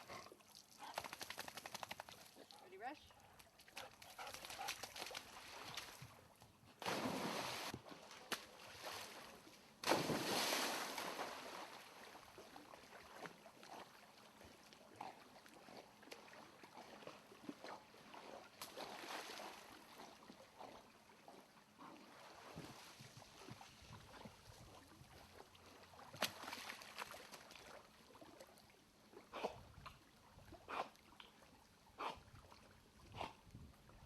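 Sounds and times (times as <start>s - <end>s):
water lapping and dripping: 0.0s - 34.0s
loud splash: 6.8s - 7.7s, 9.8s - 11.6s.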